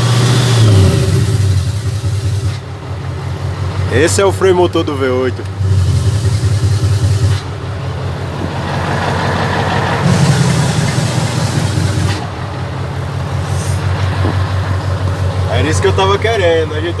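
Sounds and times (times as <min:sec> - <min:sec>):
diesel truck engine running: 0:00.0 - 0:17.0
engine brake exhaust rushing: 0:00.0 - 0:17.0.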